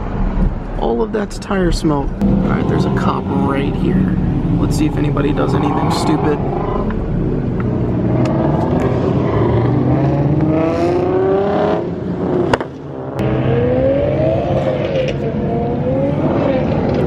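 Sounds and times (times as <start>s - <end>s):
car engine accelerating: 2.0s - 17.0s.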